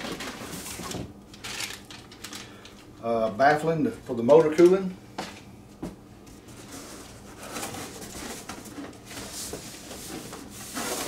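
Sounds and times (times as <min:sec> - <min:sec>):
packaging rustling: 0:00.0 - 0:02.9
steady low hum: 0:00.0 - 0:11.0.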